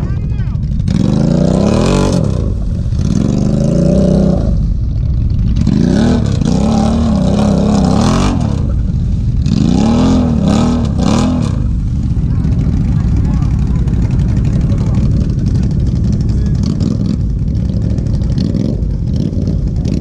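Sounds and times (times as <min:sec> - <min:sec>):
engine revving: 0:00.0 - 0:20.0.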